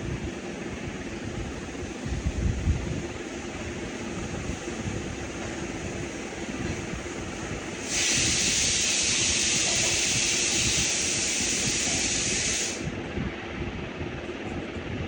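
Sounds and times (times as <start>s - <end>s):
steady hiss: 3.2s - 12.9s.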